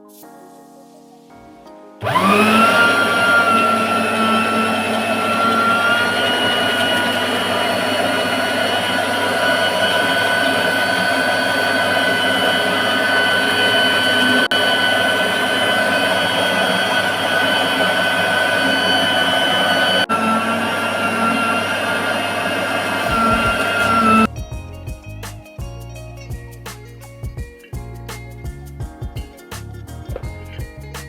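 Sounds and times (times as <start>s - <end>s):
meat grinder motor whining: 2.0s - 24.3s.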